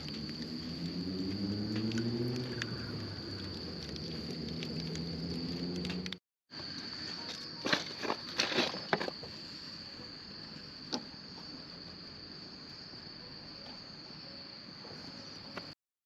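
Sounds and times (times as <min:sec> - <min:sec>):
campfire crackling and popping: 0:00.0 - 0:06.2
insects chirring: 0:00.0 - 0:15.8.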